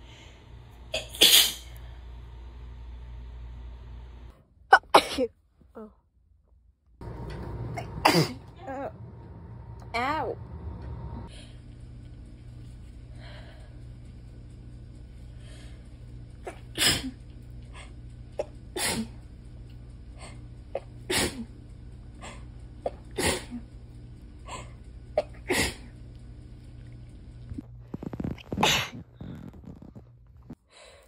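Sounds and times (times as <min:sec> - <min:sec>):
steady low hum: 0:00.0 - 0:05.2, 0:07.0 - 0:31.0
woman sneezing: 0:01.0 - 0:01.7, 0:04.7 - 0:05.3, 0:23.2 - 0:23.6, 0:25.2 - 0:25.8.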